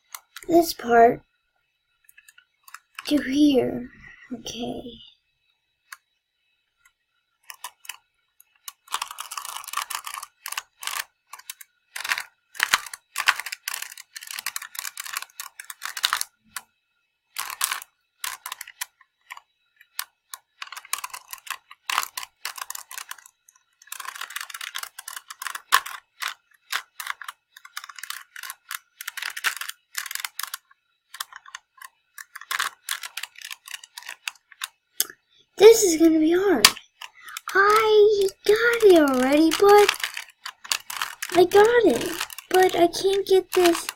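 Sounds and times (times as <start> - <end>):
plastic puzzle cube clicking: 0.0 - 0.5, 7.4 - 16.7, 17.3 - 35.8, 36.6 - 43.9.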